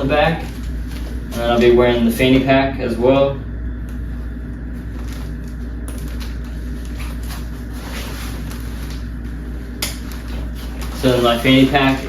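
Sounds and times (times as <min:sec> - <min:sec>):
low background hum: 0:00.0 - 0:12.0
faint rustles and clicks: 0:03.9 - 0:12.0.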